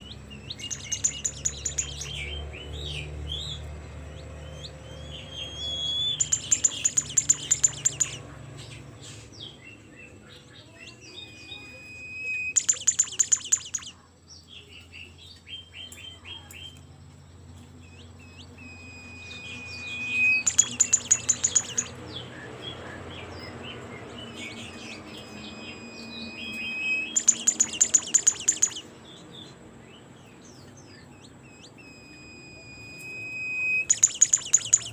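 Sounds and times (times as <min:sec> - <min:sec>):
songbird singing: 0:00.0 - 0:34.9
fast rattling bird trill: 0:00.2 - 0:03.6, 0:04.4 - 0:08.3, 0:11.1 - 0:14.0, 0:18.3 - 0:22.8, 0:24.2 - 0:28.9, 0:31.2 - 0:34.9.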